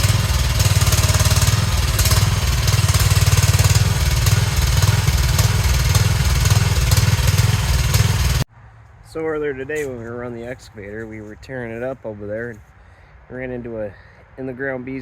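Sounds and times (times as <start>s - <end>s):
small engine chugging: 0.0s - 8.4s.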